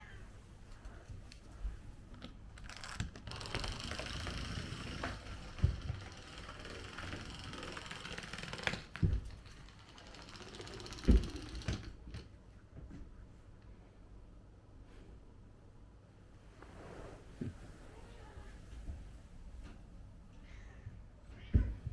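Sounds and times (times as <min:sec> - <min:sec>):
toy motor whirring and clicking: 0:02.6 - 0:12.0.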